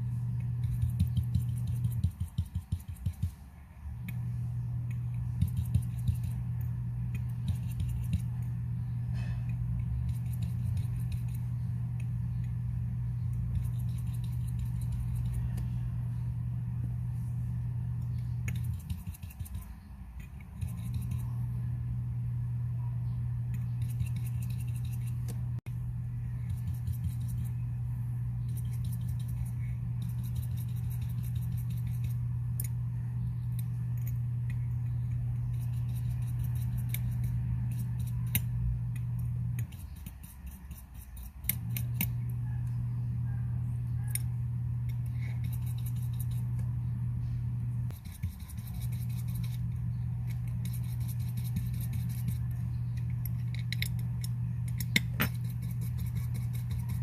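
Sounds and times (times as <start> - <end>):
low electrical hum: 0.0 - 57.0
metal tools clicking: 52.9 - 55.4.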